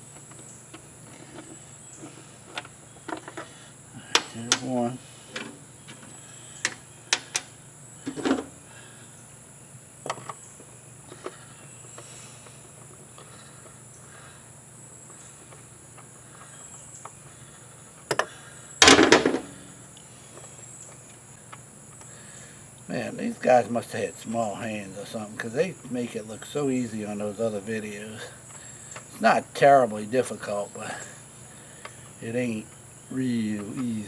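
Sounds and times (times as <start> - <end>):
crickets droning: 0.0 - 34.0
hand tools clicking and knocking: 0.2 - 8.5
tool clatter: 18.8 - 19.5.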